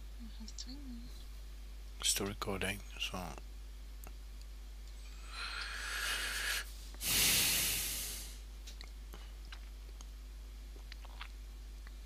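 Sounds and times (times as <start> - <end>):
person exhaling like a sigh: 5.2 - 8.4
person inhaling through nose: 5.2 - 8.4.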